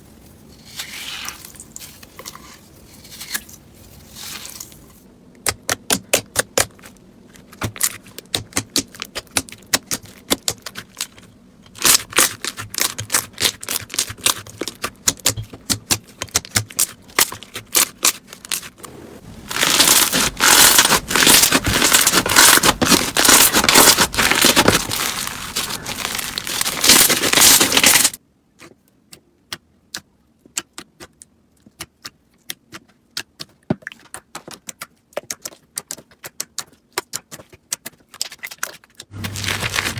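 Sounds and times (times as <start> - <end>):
slime squeezed by hand crackling: 19.3 - 28.2.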